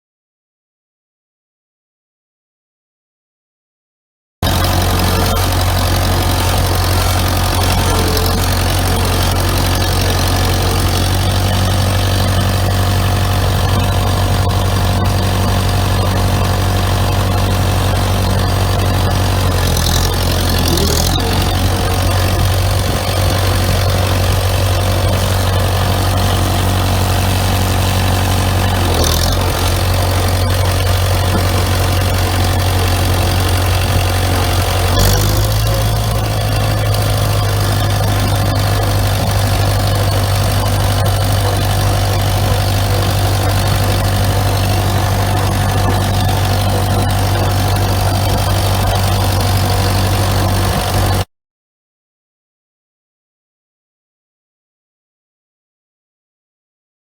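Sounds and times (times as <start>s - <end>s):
tractor diesel engine idling: 4.4s - 51.3s.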